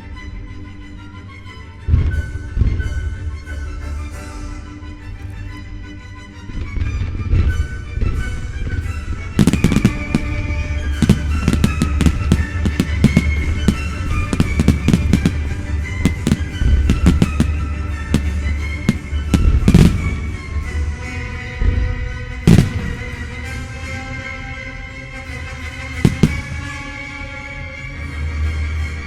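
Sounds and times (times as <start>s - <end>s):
music: 0.0s - 29.0s
fireworks bangs and crackles: 6.7s - 20.8s, 22.4s - 23.6s, 25.9s - 27.0s.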